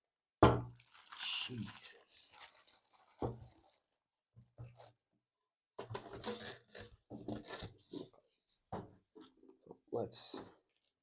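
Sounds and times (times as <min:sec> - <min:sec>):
packaging rustling and crinkling: 0:00.7 - 0:04.0.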